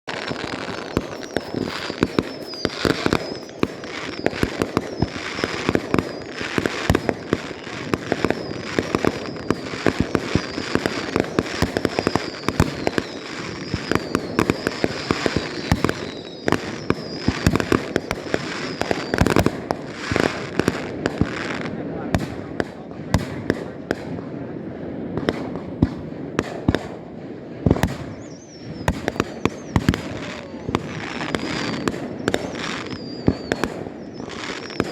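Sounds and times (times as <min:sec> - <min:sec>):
fireworks crackling bangs and pops: 0:00.1 - 0:34.9
high descending whistle: 0:00.5 - 0:06.4, 0:28.1 - 0:34.9.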